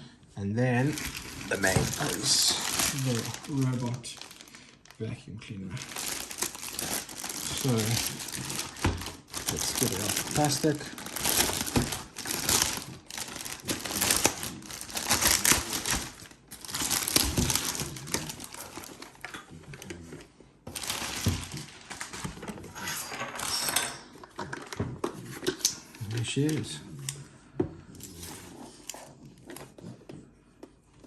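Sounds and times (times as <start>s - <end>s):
plastic wrapping crinkling: 0.8s - 5.0s, 5.7s - 22.7s.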